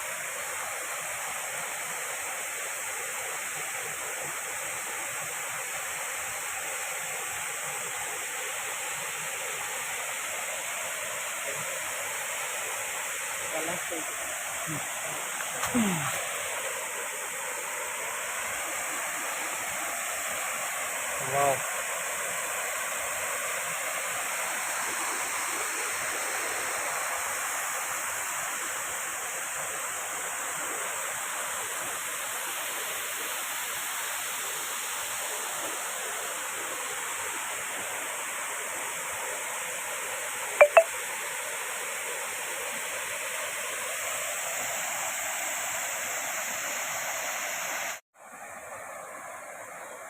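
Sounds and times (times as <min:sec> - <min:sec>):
waterfall rushing: 0:00.0 - 0:30.3.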